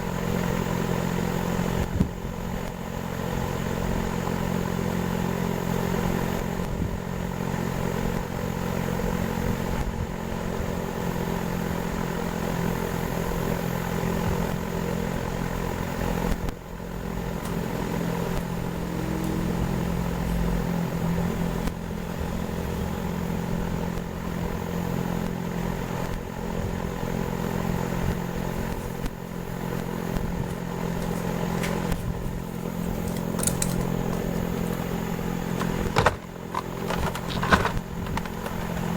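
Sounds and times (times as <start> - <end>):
motor humming: 11.8 - 38.9.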